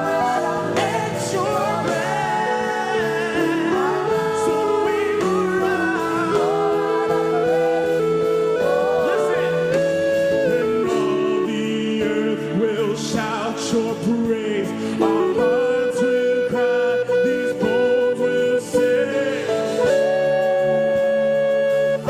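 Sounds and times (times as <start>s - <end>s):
gliding melody line: 0.0s - 12.9s
guitar: 0.0s - 22.0s
live gospel worship band: 0.0s - 22.0s.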